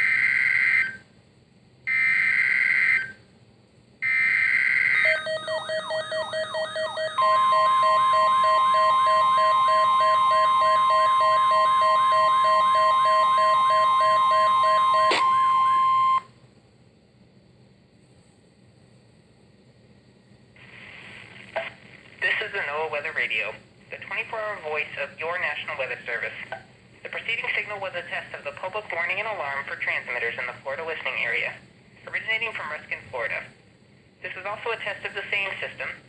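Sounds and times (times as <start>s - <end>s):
steady warning alarm tone: 0.0s - 1.1s, 1.9s - 3.2s, 4.0s - 16.3s
pulsing tone with falling chirps: 4.1s - 16.2s.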